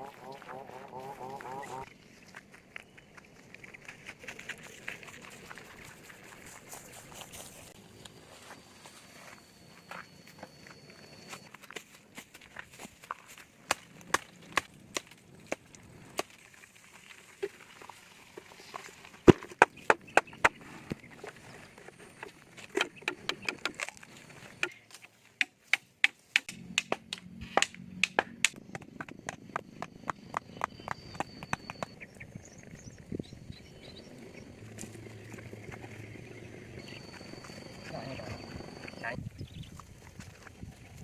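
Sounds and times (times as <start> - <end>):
wood being chopped: 25.4 - 31.9.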